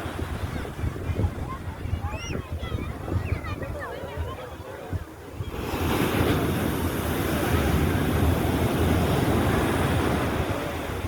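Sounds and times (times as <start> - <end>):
wind buffeting microphone: 0.0 - 11.0
sea waves breaking on beach: 5.4 - 11.0.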